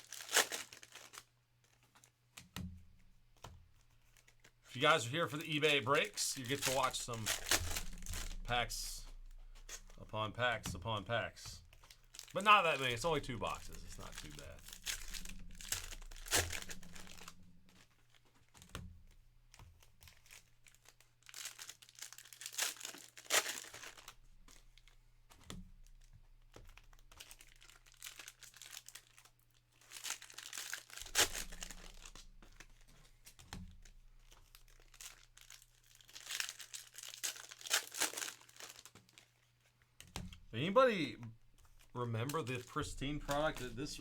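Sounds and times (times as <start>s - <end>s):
plastic wrappers crinkling and tearing: 0.0s - 2.2s, 3.3s - 44.0s
quiet handling: 4.7s - 17.8s, 40.2s - 44.0s.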